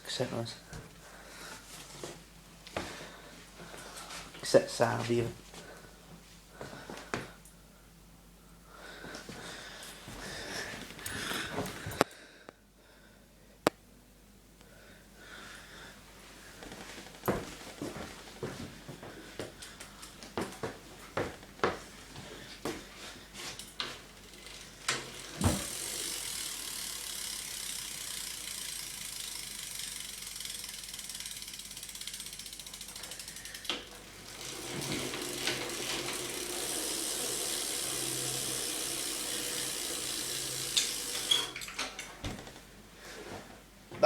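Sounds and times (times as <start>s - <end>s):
bicycle freewheel clicking: 23.5s - 42.5s.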